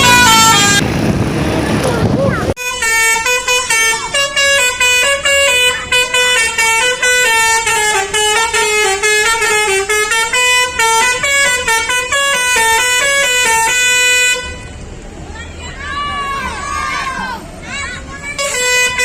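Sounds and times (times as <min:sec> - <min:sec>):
musical air horn melody: 0:00.0 - 0:00.8, 0:02.6 - 0:14.8, 0:18.4 - 0:19.0.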